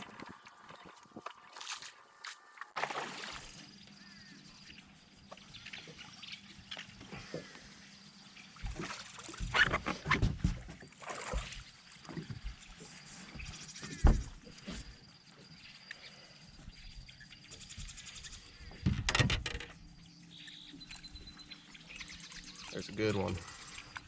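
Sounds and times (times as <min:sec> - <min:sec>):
water splashing and trickling: 0:00.0 - 0:04.0, 0:04.8 - 0:15.0, 0:20.8 - 0:24.0.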